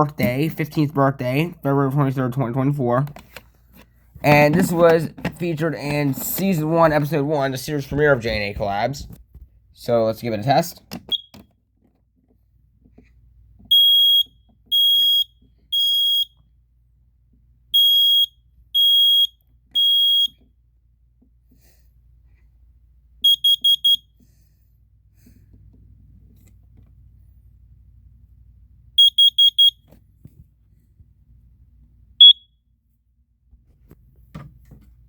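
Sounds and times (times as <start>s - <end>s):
smoke alarm beeping: 10.9s - 11.5s, 13.7s - 16.4s, 17.7s - 20.4s, 23.2s - 24.2s, 29.0s - 29.9s, 32.2s - 32.6s.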